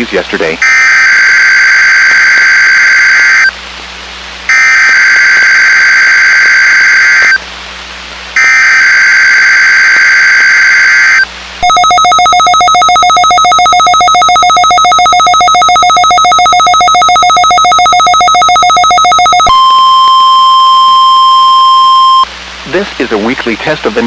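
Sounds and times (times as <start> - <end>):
warning alarm tone: 0.6 - 3.5, 4.5 - 7.4, 8.4 - 22.3
buzzy data tones: 4.5 - 7.4, 8.4 - 19.6.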